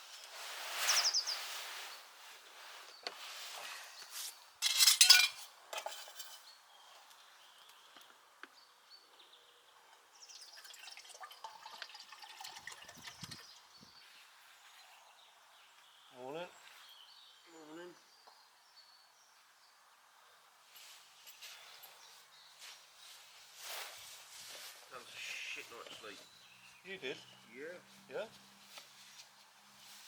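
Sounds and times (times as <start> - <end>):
cookware and cutlery clattering: 4.6 - 6.5.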